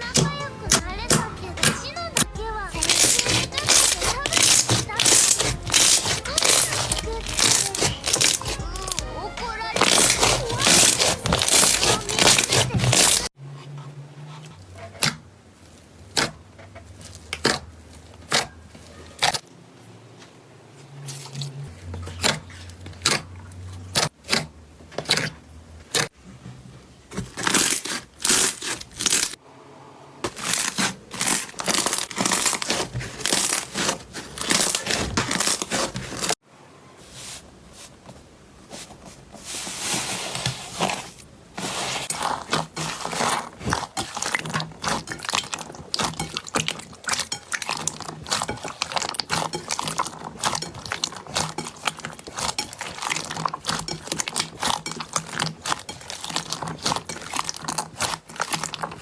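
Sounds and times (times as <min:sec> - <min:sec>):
slime squeezed crackling and popping: 0:00.8 - 0:09.1, 0:09.7 - 0:13.3, 0:30.4 - 0:35.8.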